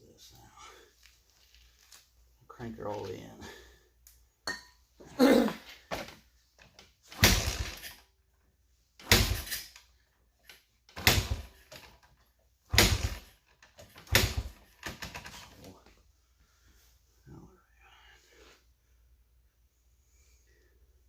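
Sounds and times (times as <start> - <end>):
dirt bike kick-start turning over: 7.2 - 7.9.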